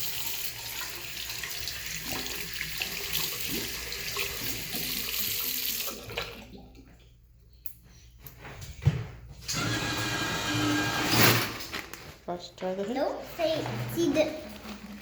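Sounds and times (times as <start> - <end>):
faucet running into sink: 0.0 - 6.8.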